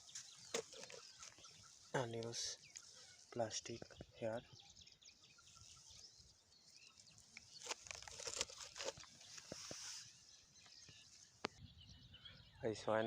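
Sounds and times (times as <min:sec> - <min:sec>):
plastic crinkling and crunching: 0:00.0 - 0:03.3, 0:06.7 - 0:09.8.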